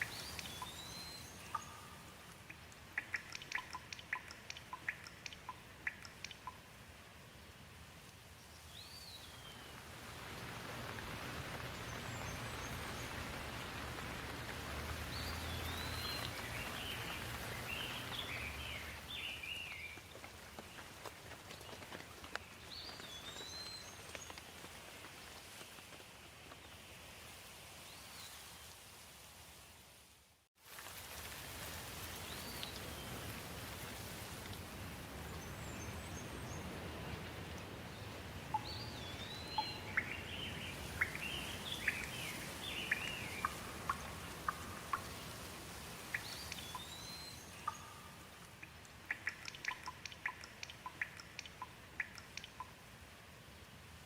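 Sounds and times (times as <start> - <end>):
small bird chirping: 0.0 - 6.6, 38.5 - 45.2, 46.0 - 52.8
water drops dripping: 0.0 - 6.7, 12.6 - 20.3, 38.4 - 52.9
rain falling: 0.0 - 27.8, 28.4 - 54.0.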